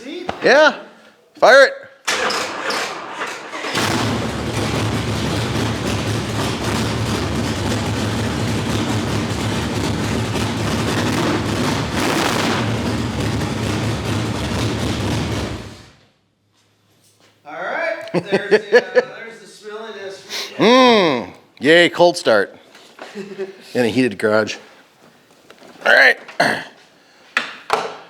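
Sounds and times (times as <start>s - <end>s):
car engine running: 3.8s - 16.0s.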